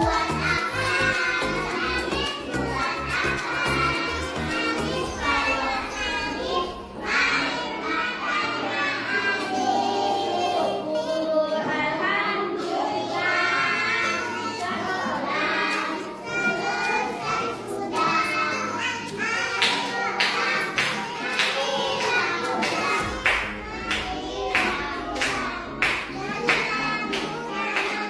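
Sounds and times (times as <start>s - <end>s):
musical accompaniment: 0.0s - 8.9s, 19.7s - 28.0s
young children singing: 0.0s - 28.0s.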